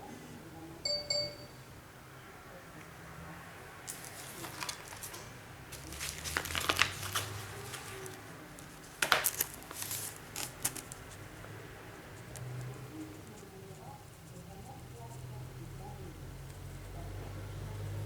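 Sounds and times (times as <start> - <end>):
packaging crinkling and rustling: 3.9 - 11.1.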